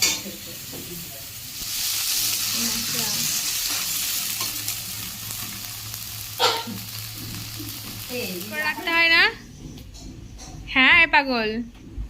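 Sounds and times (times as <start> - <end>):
food sizzling in oil: 0.0 - 9.6.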